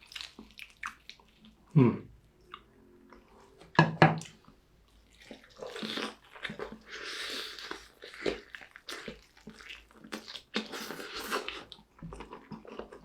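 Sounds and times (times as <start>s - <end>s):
wet chewing: 0.0s - 1.6s, 4.2s - 13.0s.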